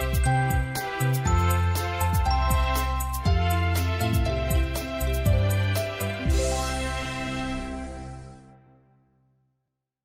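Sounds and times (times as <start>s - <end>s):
instrumental classical music: 0.0s - 8.6s.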